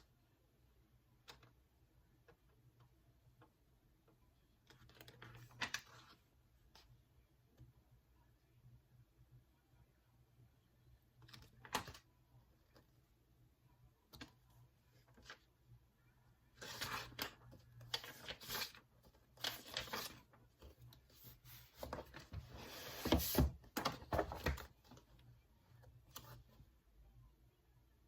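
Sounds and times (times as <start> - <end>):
paper rustling and crinkling: 16.6 - 24.7.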